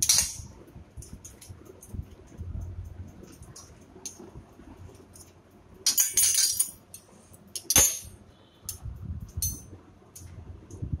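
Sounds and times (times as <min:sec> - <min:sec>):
dishes clinking and clattering: 0:05.9 - 0:08.2.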